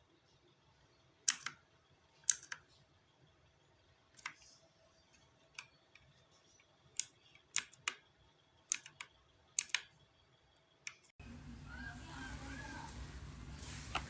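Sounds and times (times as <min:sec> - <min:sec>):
mechanical keyboard key clicks: 0:08.7 - 0:09.9.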